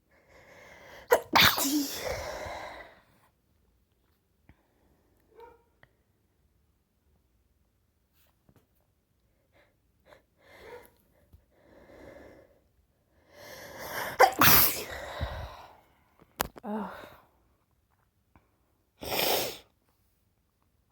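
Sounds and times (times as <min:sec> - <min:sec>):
woman sneezing: 0:01.1 - 0:02.5, 0:14.1 - 0:15.1.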